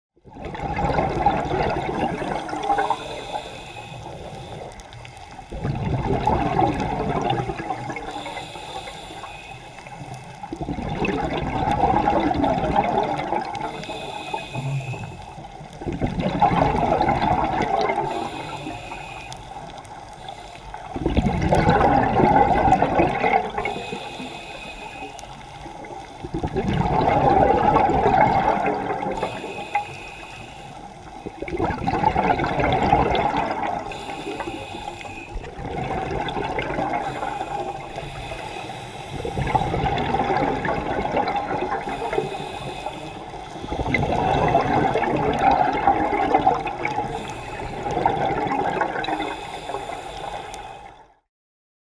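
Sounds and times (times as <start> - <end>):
exhaled bubbles rushing: 0.2 - 8.4, 10.0 - 18.7, 20.7 - 23.9, 25.7 - 29.8, 31.0 - 38.4, 39.1 - 50.3
regulator inhale hiss: 1.9 - 5.5, 7.4 - 10.6, 13.5 - 15.8, 17.9 - 21.0, 23.4 - 26.3, 28.9 - 31.3, 33.7 - 35.6, 36.8 - 39.8, 41.7 - 45.1, 46.8 - 48.0, 49.0 - 51.2.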